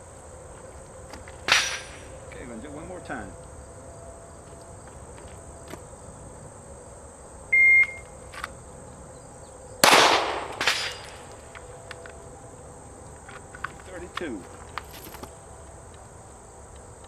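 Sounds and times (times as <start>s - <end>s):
insects droning: 0.0s - 17.0s
weaker crack: 0.6s - 3.0s, 9.8s - 12.2s
shot timer beep: 7.6s - 8.0s
pistol shot: 9.8s - 11.7s.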